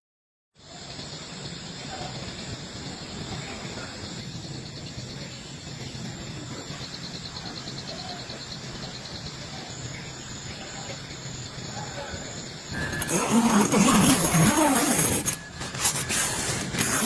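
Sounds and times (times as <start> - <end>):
insect trilling: 12.7 - 17.0.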